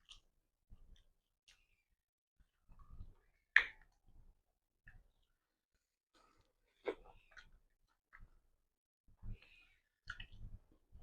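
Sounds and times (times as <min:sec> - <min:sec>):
mouth chewing clicks and smacks: 0:10.0 - 0:10.6.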